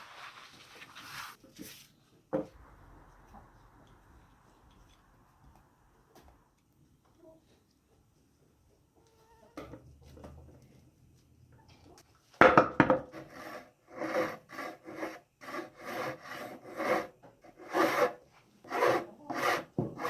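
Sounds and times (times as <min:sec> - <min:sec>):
saw rasp scraping wood: 0:13.1 - 0:20.0.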